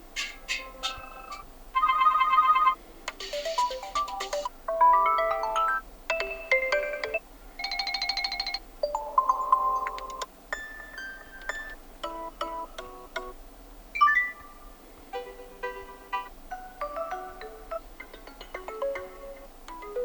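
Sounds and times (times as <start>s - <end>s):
rapidly pulsing beeps: 0.6s - 12.7s
short electronic ringtone melodies: 1.1s - 12.7s, 14.0s - 14.6s.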